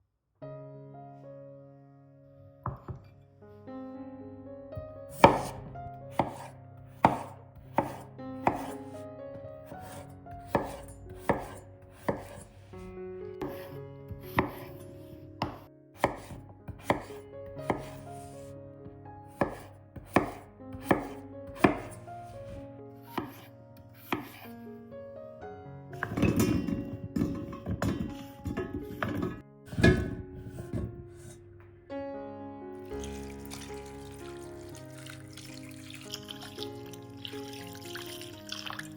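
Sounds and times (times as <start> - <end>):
knife chopping on cutting board: 5.1 - 9.0, 9.6 - 12.6, 13.4 - 14.8, 15.4 - 18.4, 19.3 - 24.5, 26.0 - 31.4.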